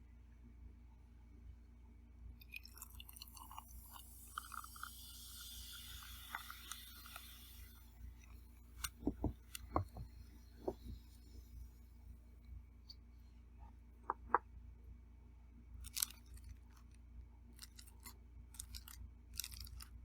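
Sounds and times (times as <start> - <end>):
sharp clicks and knocks: 8.8 - 11.0, 14.0 - 14.4
chewing food: 17.6 - 20.0.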